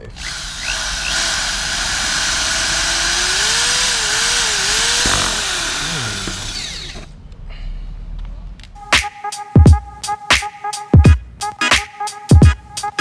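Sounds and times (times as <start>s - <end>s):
power drill running: 0.0s - 7.1s.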